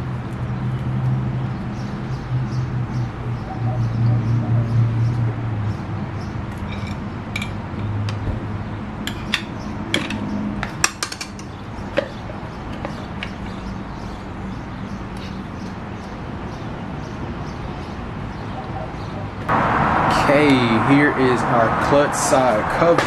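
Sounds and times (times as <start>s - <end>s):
metal tools clinking: 6.5s - 7.6s.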